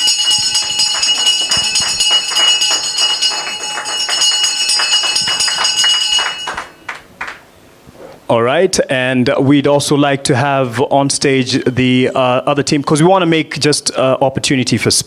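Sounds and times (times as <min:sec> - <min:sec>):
digital bell ringing: 0:00.0 - 0:06.9.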